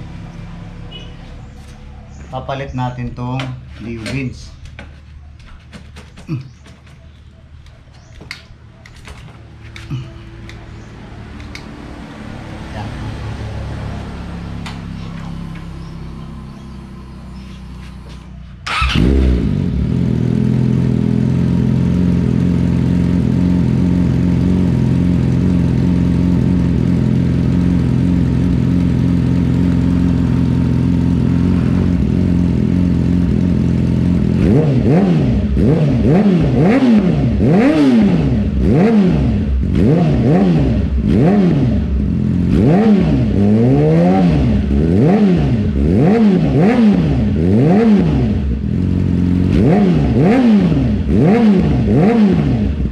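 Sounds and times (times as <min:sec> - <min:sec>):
motorcycle engine idling and revving: 0:00.0 - 0:52.9.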